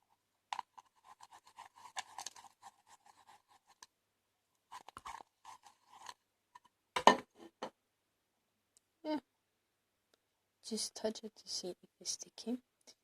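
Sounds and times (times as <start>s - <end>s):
utensil scraping bowl through slime: 0.6s - 3.8s, 4.7s - 6.2s.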